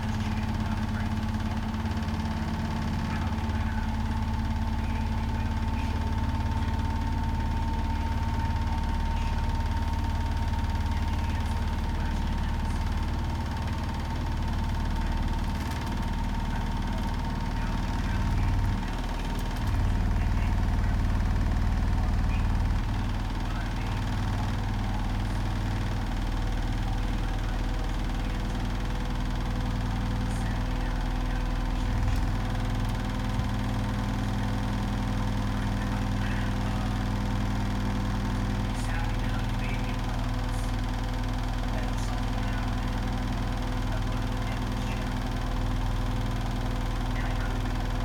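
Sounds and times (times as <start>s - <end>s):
washing machine running: 0.0s - 48.0s.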